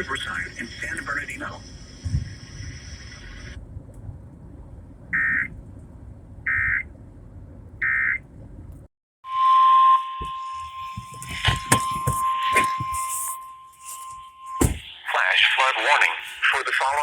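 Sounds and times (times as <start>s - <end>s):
steady high tone: 9.2s - 17.0s
digital warbling beeps: 10.6s - 17.0s.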